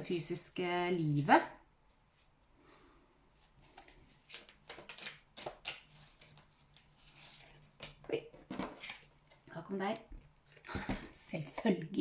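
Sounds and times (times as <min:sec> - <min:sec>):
cards being shuffled: 0:03.6 - 0:09.1.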